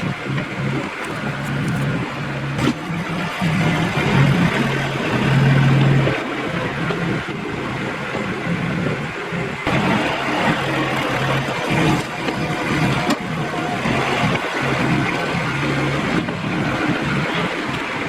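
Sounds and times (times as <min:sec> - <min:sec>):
tractor engine running: 0:00.0 - 0:18.0.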